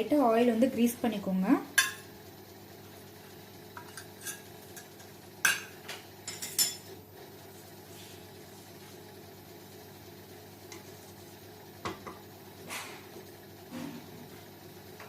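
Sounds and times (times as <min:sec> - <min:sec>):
steady low hum: 0:00.0 - 0:15.0
utensils clinking on frying pan: 0:03.8 - 0:06.8.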